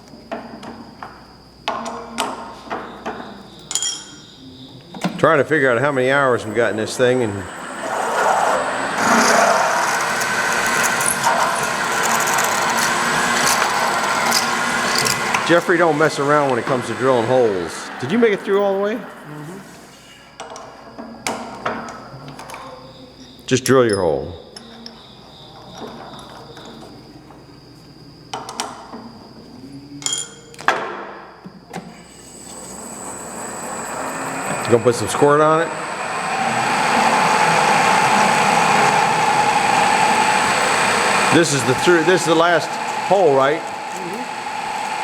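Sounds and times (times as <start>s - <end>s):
machine motor high whine: 4.3s - 20.4s, 31.7s - 45.0s
power drill boring into steel: 5.3s - 19.7s, 32.0s - 45.0s.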